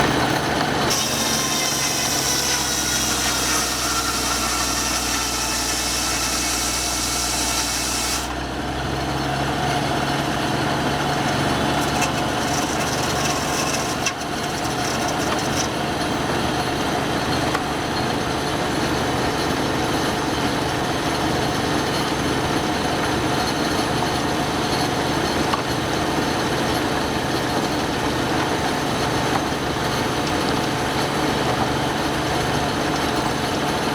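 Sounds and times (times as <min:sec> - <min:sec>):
saw blade cutting wood: 0:00.0 - 0:08.5, 0:11.0 - 0:16.3
sawmill engine running: 0:00.0 - 0:33.9.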